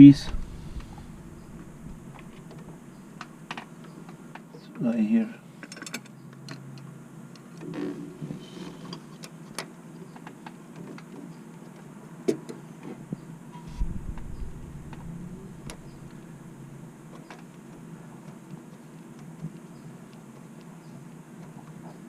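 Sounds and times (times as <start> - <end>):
short low rumble: 0.0 - 3.5, 13.7 - 17.1.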